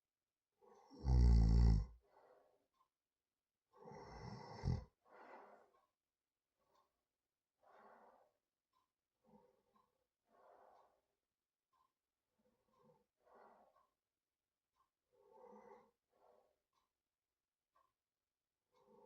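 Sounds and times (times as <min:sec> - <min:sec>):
person snoring: 0:00.9 - 0:01.9, 0:03.8 - 0:04.9
soft breathing: 0:03.8 - 0:05.9, 0:07.6 - 0:08.4, 0:09.2 - 0:11.1, 0:12.4 - 0:14.0, 0:15.1 - 0:16.6.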